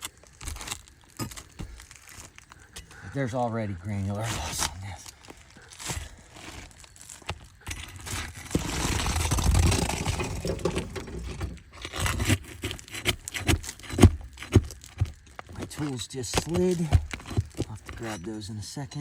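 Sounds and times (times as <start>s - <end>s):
tools sliding on roof shingles: 6.0s - 18.2s.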